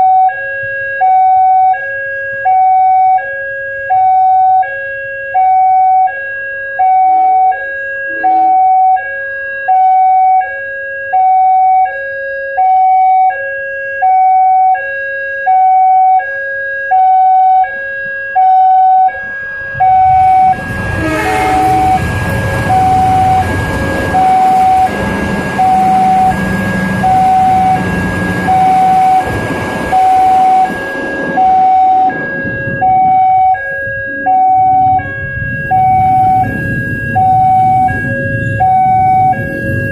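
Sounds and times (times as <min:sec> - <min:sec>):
level-crossing warning siren: 0:00.0 - 0:39.9
passing train rumble: 0:19.1 - 0:39.9.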